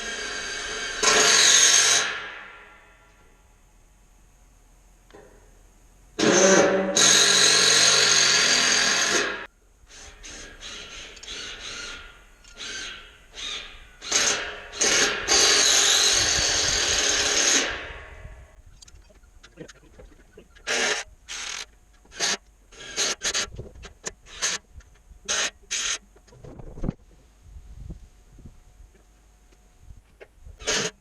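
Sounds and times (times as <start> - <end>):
power drill driving screws: 6.2 - 17.8, 20.7 - 23.5, 30.6 - 31.0.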